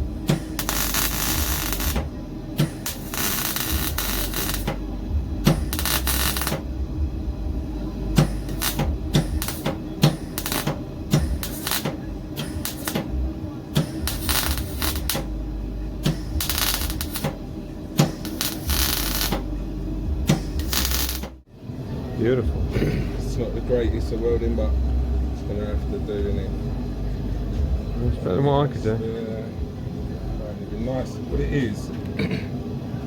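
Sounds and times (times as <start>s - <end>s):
welding machine low hum: 0.0s - 21.5s
welding arc crackling and popping: 0.2s - 4.8s, 5.4s - 6.7s, 8.2s - 13.2s, 13.8s - 15.4s, 16.0s - 17.4s, 18.0s - 19.5s, 20.3s - 21.4s.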